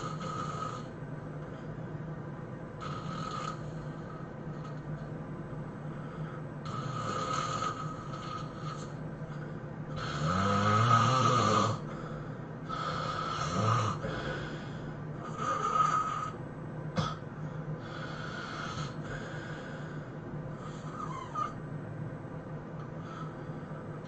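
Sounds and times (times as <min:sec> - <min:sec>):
person snoring: 0:00.0 - 0:00.9, 0:02.8 - 0:04.8, 0:06.2 - 0:09.0, 0:09.9 - 0:16.4, 0:17.8 - 0:21.6.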